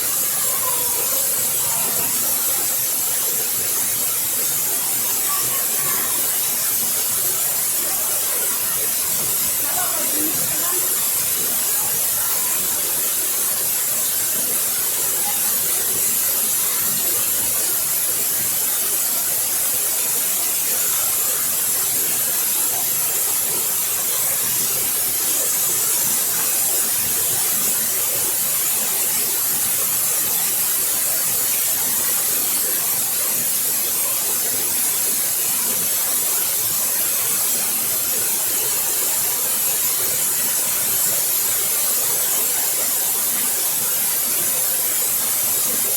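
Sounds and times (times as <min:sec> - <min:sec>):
waterfall splashing: 0:00.0 - 0:45.9.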